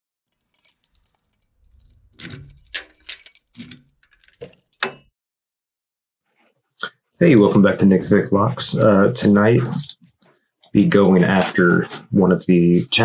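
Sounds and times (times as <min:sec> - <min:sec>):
small metal pieces jangling: 0:00.3 - 0:04.4.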